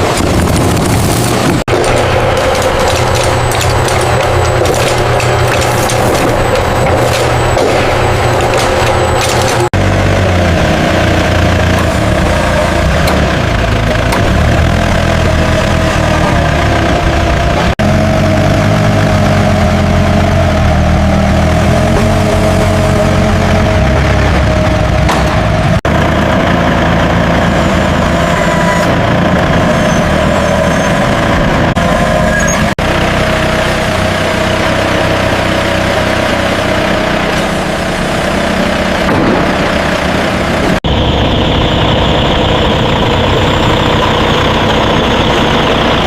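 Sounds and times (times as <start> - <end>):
steady tones: 0.0 - 17.7
loud machinery noise: 0.0 - 46.0.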